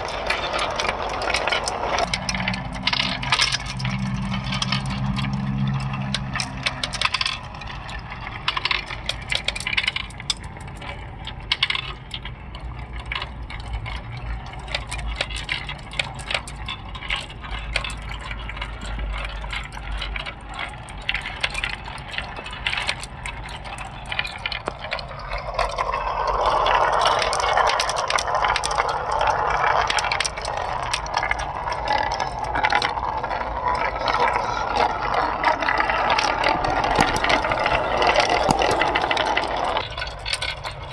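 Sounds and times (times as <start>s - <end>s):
marbles clicking on a marble run: 0.0s - 40.9s.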